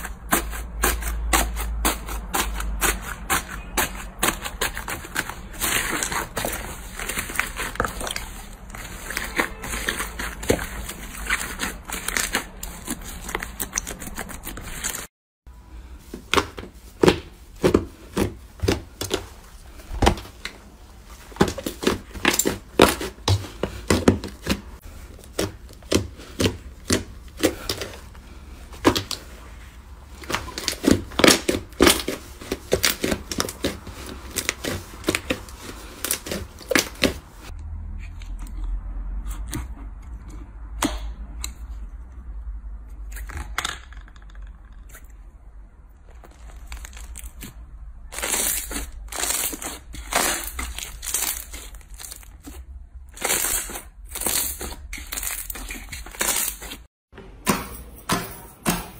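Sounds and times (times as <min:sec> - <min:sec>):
slime crackling and popping: 0:46.1 - 0:52.5.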